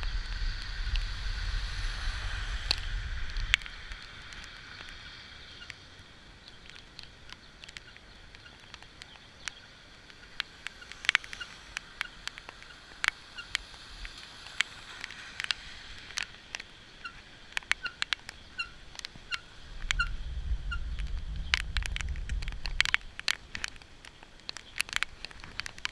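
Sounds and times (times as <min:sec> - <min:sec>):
low rumble: 0:00.0 - 0:04.4
faint steady hiss: 0:00.0 - 0:25.9
raindrops tapping and plinking: 0:00.0 - 0:25.9.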